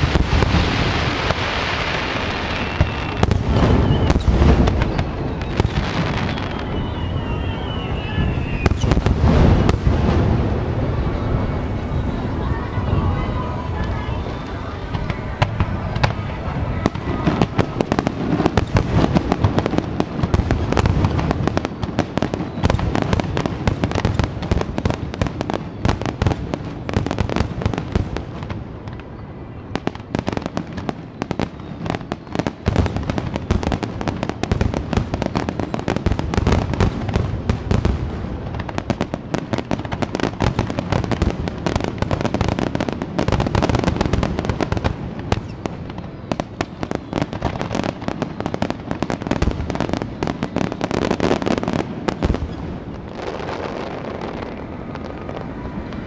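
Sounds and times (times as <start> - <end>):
fireworks bursting and crackling: 0.0 - 56.0.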